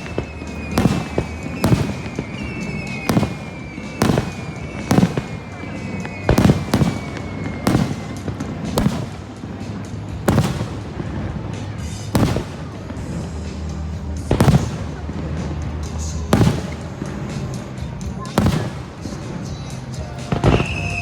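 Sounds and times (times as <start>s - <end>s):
fireworks booming: 0.0s - 21.0s
music playing: 0.0s - 21.0s.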